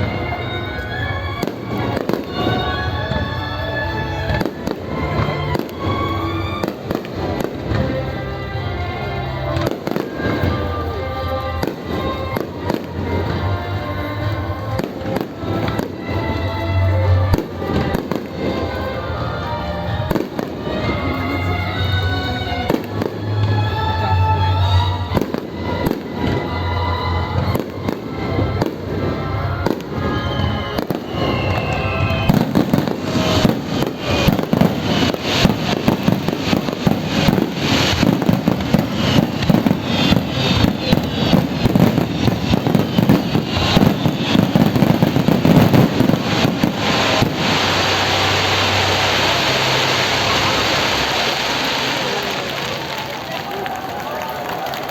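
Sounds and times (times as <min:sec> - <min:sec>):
fireworks bangs and crackles: 0:00.0 - 0:54.9
music playing: 0:00.0 - 0:54.9
steady rush of noise: 0:00.0 - 0:54.9
fireworks shells bursting: 0:29.8 - 0:53.7.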